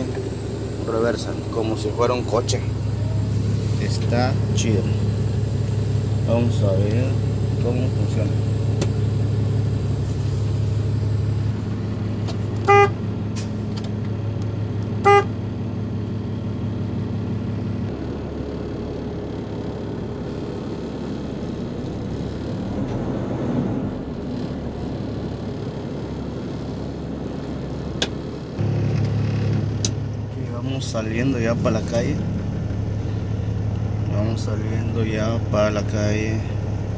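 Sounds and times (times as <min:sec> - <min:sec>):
truck diesel engine humming: 0:00.0 - 0:36.9
short high beeps: 0:12.7 - 0:13.0, 0:15.1 - 0:15.3.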